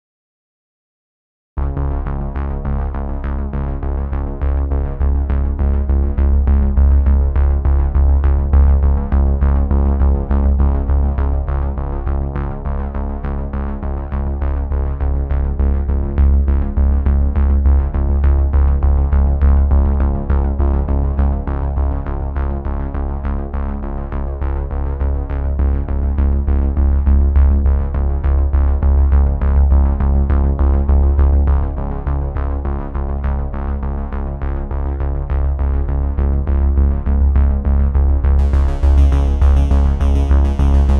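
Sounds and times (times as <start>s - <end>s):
synthesizer music with heavy bass: 38.3s - 40.9s.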